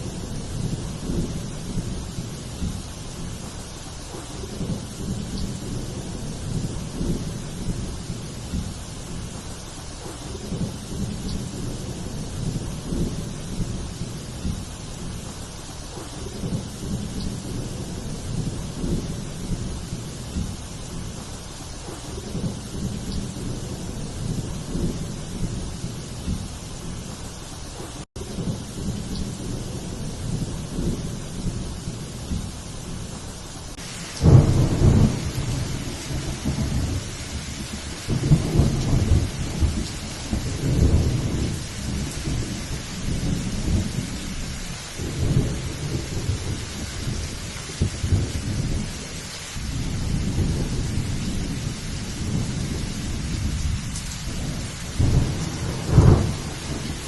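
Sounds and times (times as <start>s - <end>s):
heavy rain: 0.0s - 57.0s
rolling thunder: 0.0s - 57.0s.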